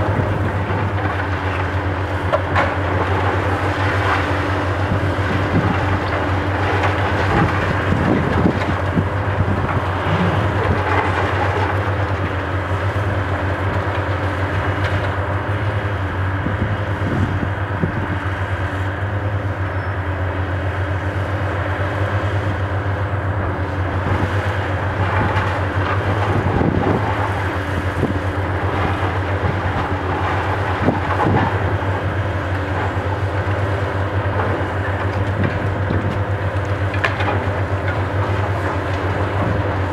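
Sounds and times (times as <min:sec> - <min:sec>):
diesel engine humming: 0:00.0 - 0:39.9
rumble with knocks and crunches: 0:00.0 - 0:39.9.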